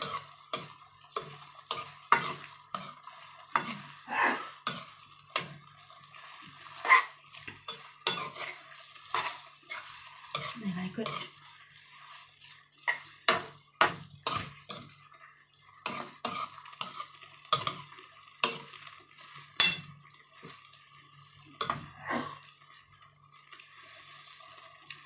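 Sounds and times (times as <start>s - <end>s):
metal utensil clanking on pan: 0.0s - 3.9s, 4.6s - 5.6s, 6.8s - 11.4s, 12.9s - 14.9s, 15.8s - 18.8s, 19.4s - 20.0s, 21.6s - 21.9s.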